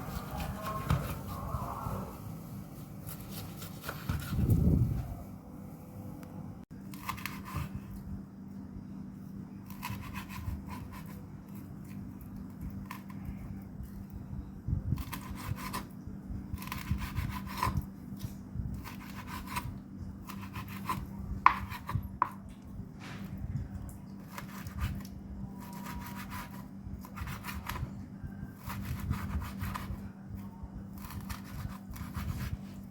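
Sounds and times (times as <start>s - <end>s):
knife slicing liver: 3.1s - 4.5s, 6.9s - 7.8s, 9.6s - 12.0s, 15.0s - 15.9s, 16.5s - 22.4s, 25.6s - 27.9s, 28.6s - 30.0s, 30.9s - 32.9s
knife tapping cutting board: 21.4s - 22.4s.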